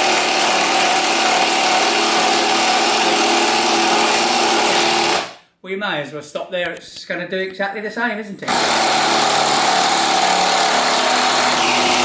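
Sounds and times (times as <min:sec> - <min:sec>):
impact driver hammering screw into wood: 0:00.0 - 0:05.4, 0:08.5 - 0:12.0.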